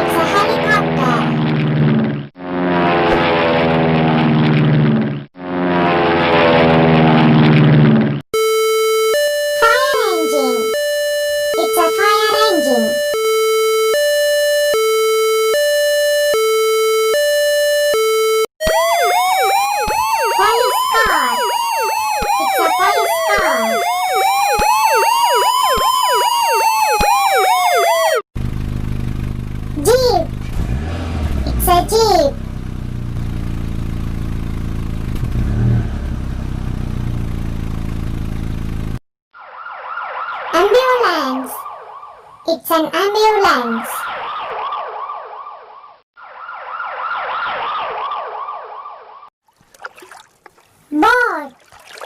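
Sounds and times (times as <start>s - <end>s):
sweeping wailing siren: 8.4s - 28.2s, 39.4s - 42.5s, 43.9s - 49.3s
two-tone fire engine siren: 8.4s - 28.3s, 39.4s - 42.5s, 43.8s - 49.3s
engine running with low drone: 28.4s - 39.0s.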